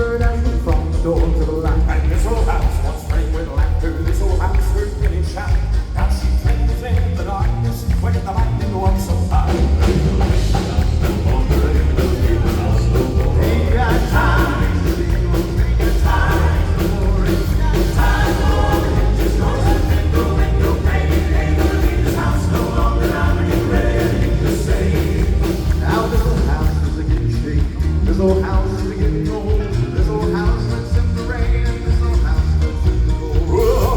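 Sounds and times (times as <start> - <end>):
live band playing: 0.0 - 33.9
vocal group singing in harmony: 9.3 - 28.0, 33.2 - 33.9.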